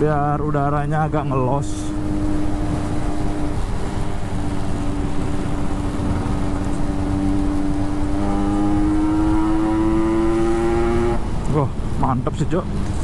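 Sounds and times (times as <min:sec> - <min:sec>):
motorcycle engine running: 0:01.8 - 0:11.2.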